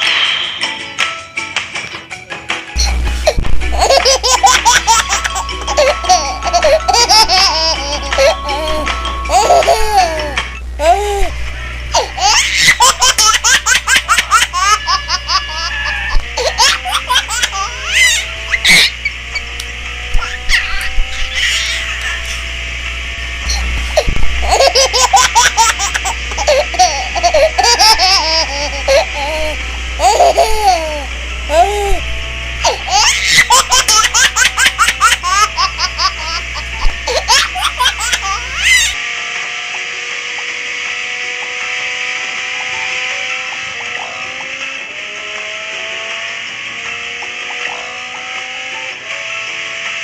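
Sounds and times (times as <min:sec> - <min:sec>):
baby giggling: 0:02.8 - 0:19.4, 0:20.2 - 0:22.4, 0:23.5 - 0:32.0, 0:32.6 - 0:39.0.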